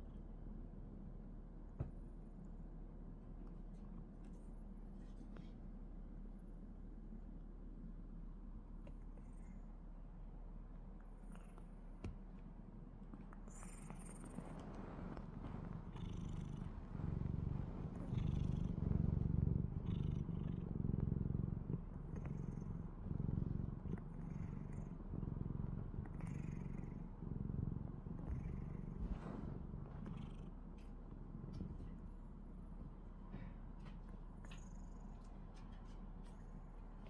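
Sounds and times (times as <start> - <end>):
cat snoring: 13.5 - 30.6.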